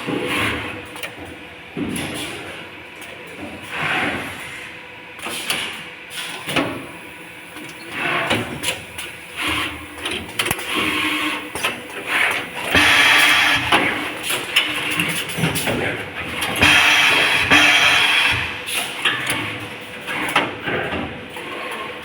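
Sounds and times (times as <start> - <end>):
machine air hisses: 12.7 - 14.1, 16.6 - 18.9
sharp mechanical clacks: 12.7 - 15.1, 16.6 - 19.4.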